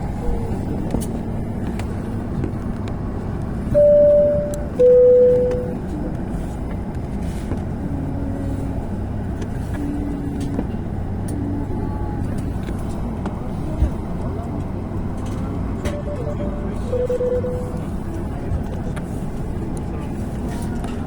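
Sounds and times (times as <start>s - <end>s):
airliner cabin rumble: 0.0s - 21.0s
two-note chime: 3.8s - 5.7s, 15.9s - 17.8s.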